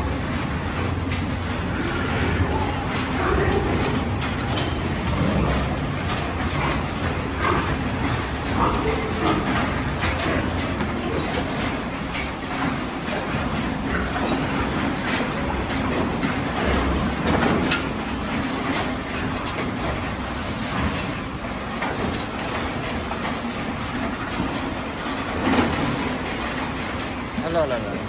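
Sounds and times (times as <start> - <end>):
pigs grunting and squealing: 0.2 - 12.1.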